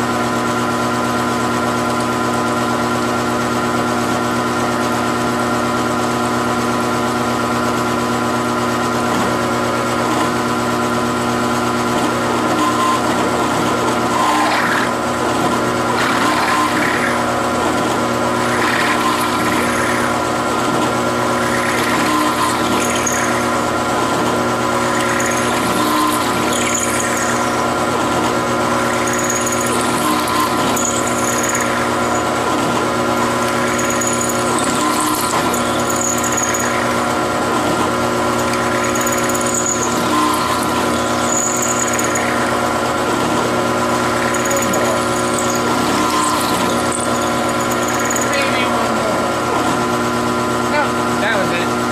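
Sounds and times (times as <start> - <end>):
machine tool cutting metal: 0.0 - 51.5
high squeal from cutter: 12.5 - 13.2, 14.0 - 15.0, 15.9 - 17.3, 18.3 - 20.4, 21.2 - 23.8, 24.6 - 49.4.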